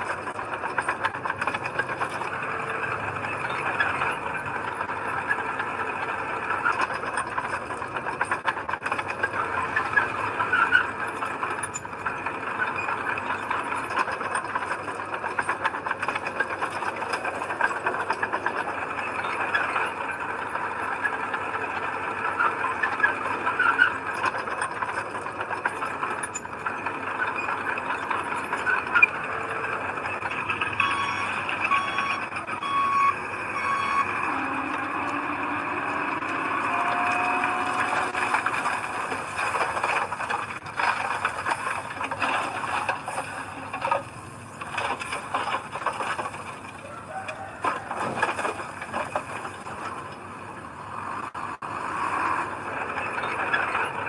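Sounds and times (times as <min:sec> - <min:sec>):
bulldozer engine running: 0:00.0 - 0:54.0
steel tracks squealing and rattling: 0:00.0 - 0:54.0.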